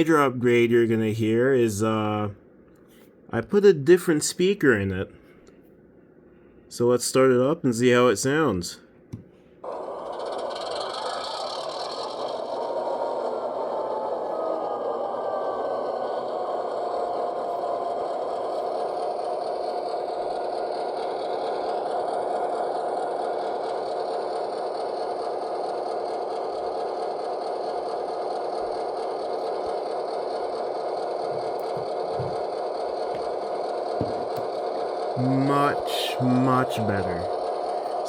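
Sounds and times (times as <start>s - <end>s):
model train diesel engine idling: 9.7s - 13.7s, 15.4s - 38.0s.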